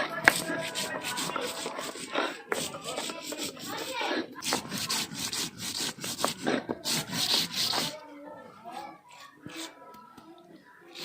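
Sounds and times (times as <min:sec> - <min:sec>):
rough rubbing and scraping strokes: 0:00.0 - 0:08.0.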